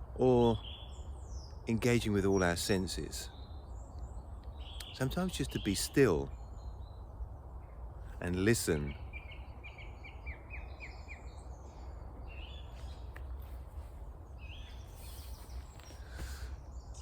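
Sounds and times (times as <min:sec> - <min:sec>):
small birds chirping: 0:00.2 - 0:17.0.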